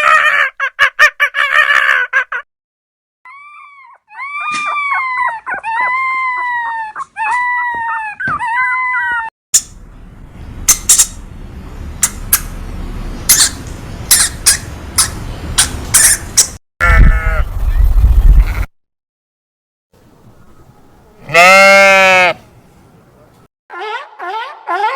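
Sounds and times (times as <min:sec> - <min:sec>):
animal whining cries: 0:03.3 - 0:09.3, 0:21.2 - 0:22.4, 0:23.7 - 0:24.9.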